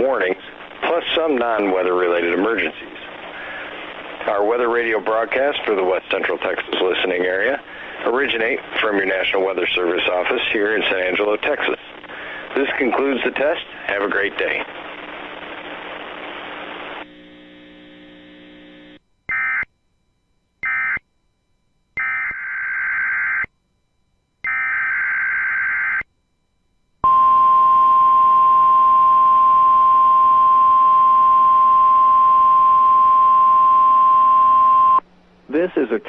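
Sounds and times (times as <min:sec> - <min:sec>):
radio hiss: 0:00.0 - 0:19.0, 0:34.8 - 0:36.0
quiet steady hum: 0:00.0 - 0:22.3, 0:26.1 - 0:36.0
steady warning alarm tone: 0:19.3 - 0:19.7, 0:20.6 - 0:21.0, 0:21.9 - 0:23.5, 0:24.4 - 0:35.0.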